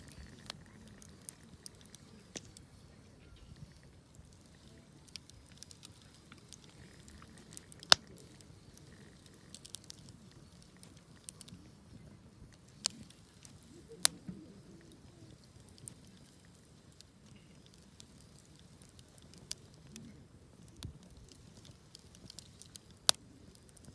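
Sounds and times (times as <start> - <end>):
campfire crackling: 0.0 - 23.9
sharp fire pops: 4.1 - 11.6.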